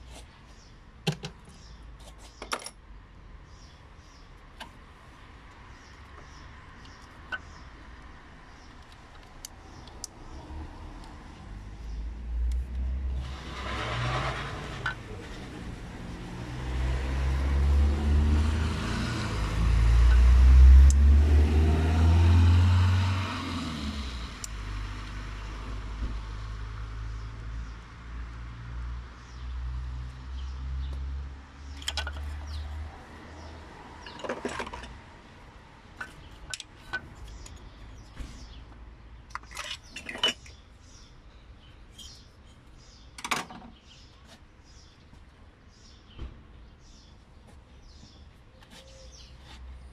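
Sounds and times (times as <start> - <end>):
tools and plastic parts clicking: 1.1 - 2.8, 31.8 - 32.4, 34.0 - 35.0, 36.0 - 37.6.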